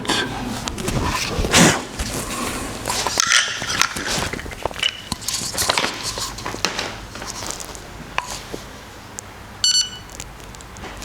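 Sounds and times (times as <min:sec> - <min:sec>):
coffee beans clicking and rattling: 0:02.8 - 0:09.3
short electronic beep: 0:09.6 - 0:10.1.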